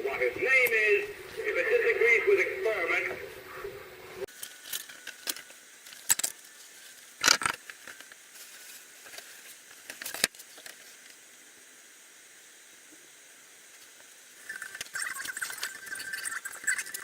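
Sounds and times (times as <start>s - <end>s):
faint hiss: 4.2s - 17.0s.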